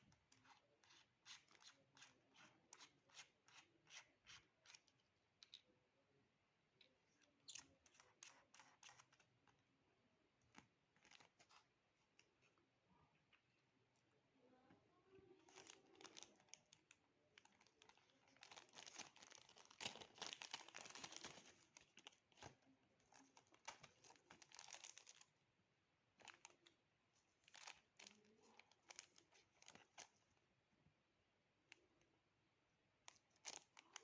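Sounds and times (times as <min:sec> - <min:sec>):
packaging crinkling and tearing: 0:15.4 - 0:25.3, 0:27.5 - 0:30.1, 0:33.1 - 0:34.0.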